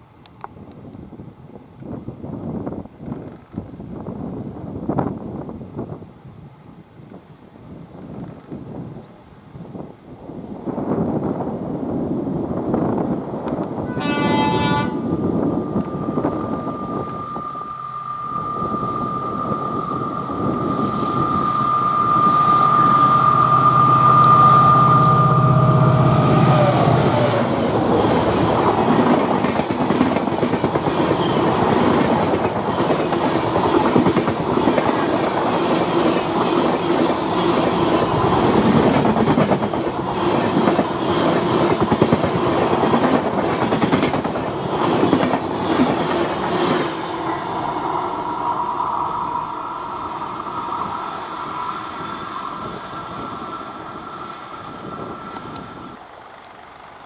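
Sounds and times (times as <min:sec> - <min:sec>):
locomotive engine drone: 0:12.6 - 0:57.0
two-tone train horn: 0:13.8 - 0:28.4, 0:46.6 - 0:56.0
train wheels clickety-clack: 0:27.2 - 0:47.1.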